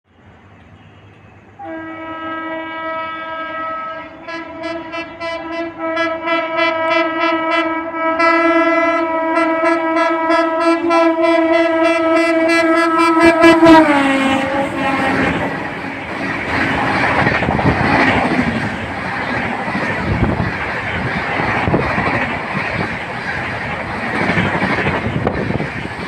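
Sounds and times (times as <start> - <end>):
locomotive horn blast: 1.6 - 17.1.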